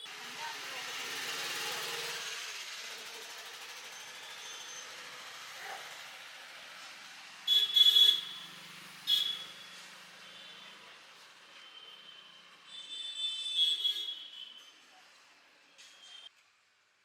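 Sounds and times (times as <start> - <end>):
background traffic noise: 0.0 - 17.0
vehicle horn honking: 7.5 - 8.5, 9.1 - 9.6.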